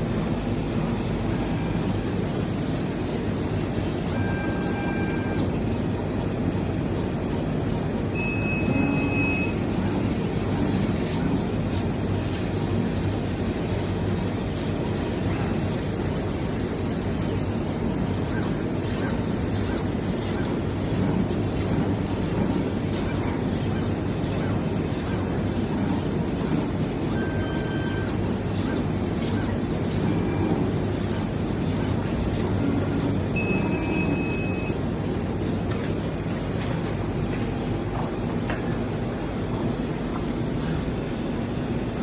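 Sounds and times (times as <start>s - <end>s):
factory machinery humming: 0.0s - 42.0s
short beeps: 33.4s - 34.8s.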